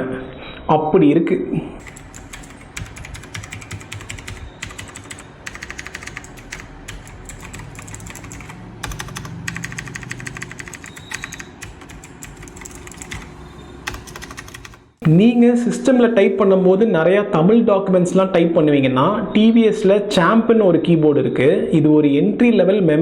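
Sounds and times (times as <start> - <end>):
clicky mechanical keyboard typing: 1.8 - 15.4.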